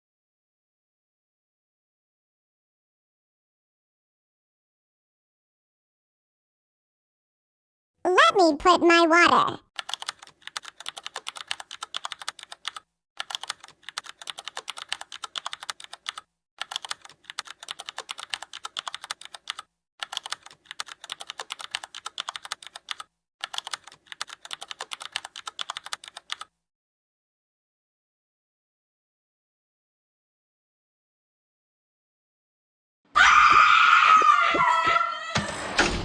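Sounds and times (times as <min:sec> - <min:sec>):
keyboard typing clicks: 0:09.8 - 0:26.5, 0:35.4 - 0:36.0.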